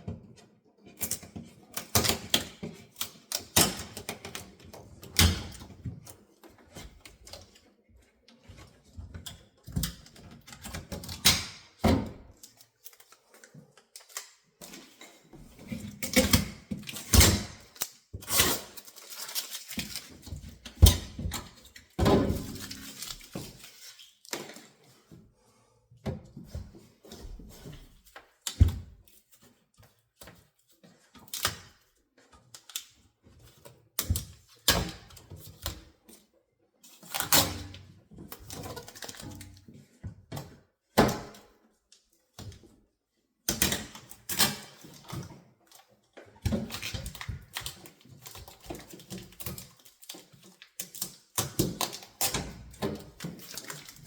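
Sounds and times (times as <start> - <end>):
packaging rustling and scraping: 16.8 - 20.7, 21.8 - 25.1, 52.9 - 54.0.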